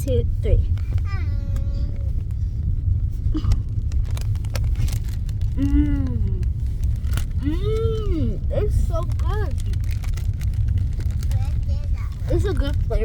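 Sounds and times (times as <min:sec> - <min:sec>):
low rumble: 0:00.0 - 0:13.0
girl humming: 0:05.6 - 0:06.4.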